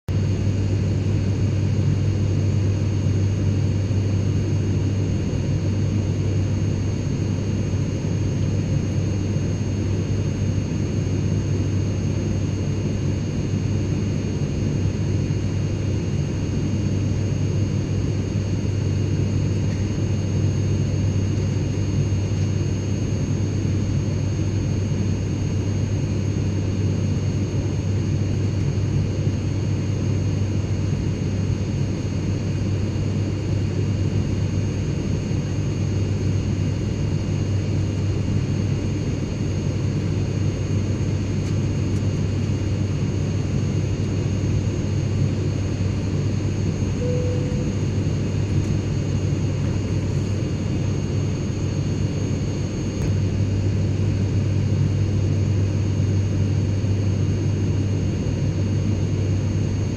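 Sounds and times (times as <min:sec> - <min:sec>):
airliner engine and airflow rumble: 0:00.1 - 0:59.9
faint high whine: 0:32.0 - 0:59.9.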